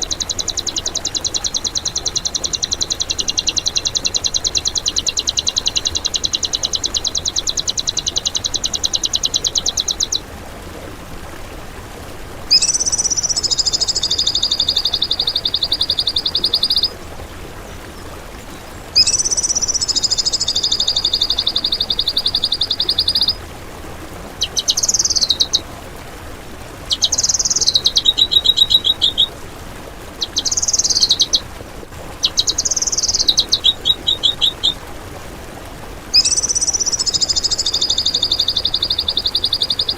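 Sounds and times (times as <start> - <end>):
songbird harsh trills: 12.5 - 16.9, 19.0 - 23.4, 26.9 - 29.3, 32.2 - 34.8, 36.2 - 39.9.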